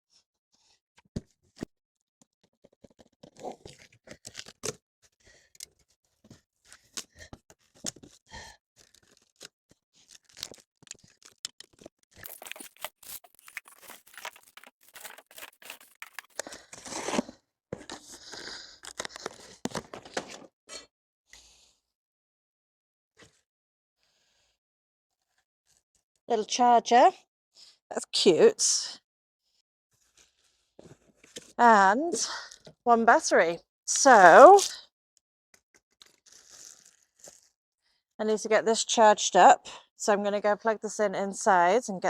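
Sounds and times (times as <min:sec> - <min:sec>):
cardboard and plastic tearing: 0:08.8 - 0:18.1
packaging rustling and scraping: 0:08.8 - 0:20.5, 0:36.0 - 0:37.5.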